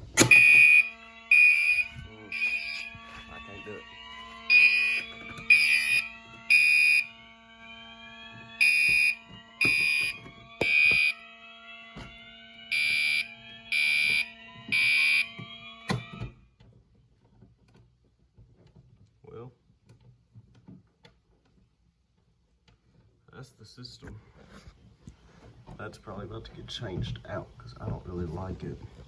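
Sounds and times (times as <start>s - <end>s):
fire alarm horn blasts: 0.0s - 16.3s.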